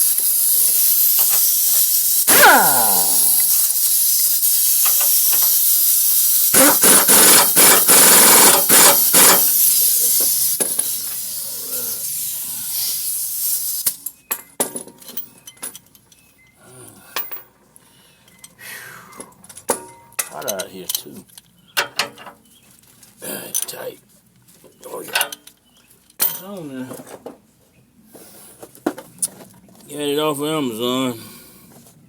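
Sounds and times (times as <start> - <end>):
impact wrench hissing and rattling: 0.0 - 14.2
metallic clicks of hand tools: 3.0 - 5.6.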